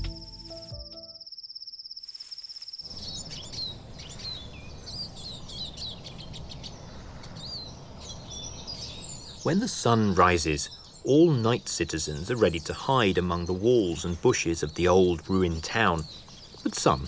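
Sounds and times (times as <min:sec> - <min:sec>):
bird chirps: 0:01.3 - 0:17.0
low background noise: 0:02.8 - 0:17.0.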